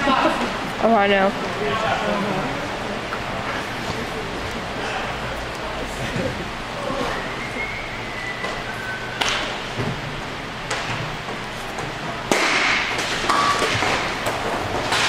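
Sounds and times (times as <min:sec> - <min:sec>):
hockey sticks hitting puck: 0:09.2 - 0:09.7, 0:10.6 - 0:15.0.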